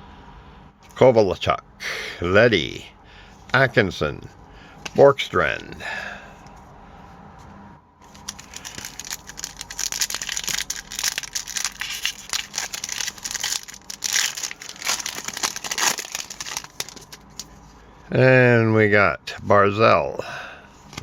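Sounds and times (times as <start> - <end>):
foil wrapper crinkling and tearing: 8.0 - 17.6.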